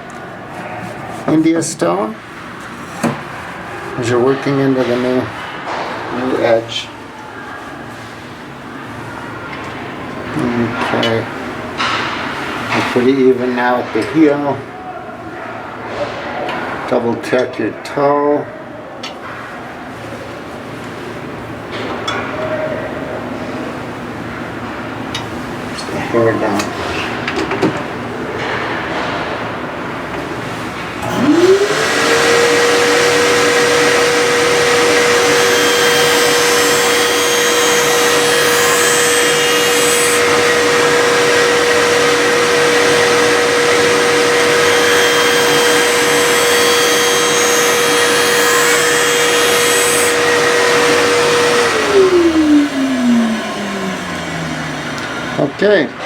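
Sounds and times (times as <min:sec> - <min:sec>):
sharpening machine motor: 0:31.0 - 0:55.4.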